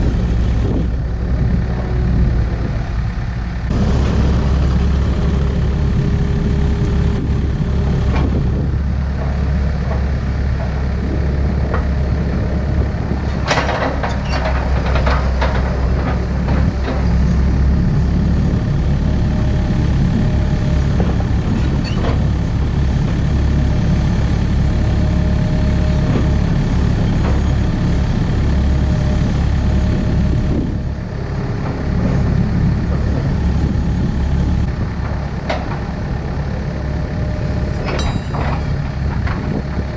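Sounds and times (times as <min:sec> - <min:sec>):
excavator diesel engine running: 0:00.0 - 0:39.9
metallic clanks and rattles: 0:13.2 - 0:17.2, 0:35.0 - 0:36.1, 0:37.4 - 0:39.9.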